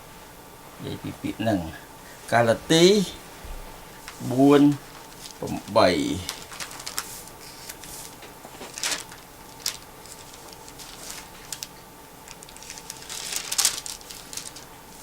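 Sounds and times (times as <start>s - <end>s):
book pages rustling: 4.0s - 15.0s.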